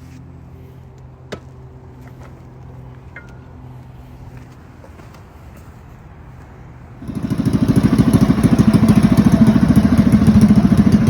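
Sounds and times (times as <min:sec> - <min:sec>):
small engine starting and running: 0:07.0 - 0:11.0.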